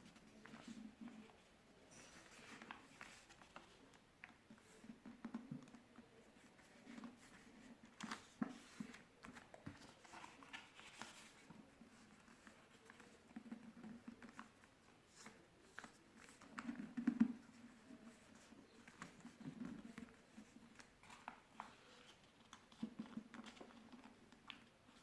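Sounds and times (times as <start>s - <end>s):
paper rustling and crinkling: 6.4s - 16.8s, 17.6s - 25.0s.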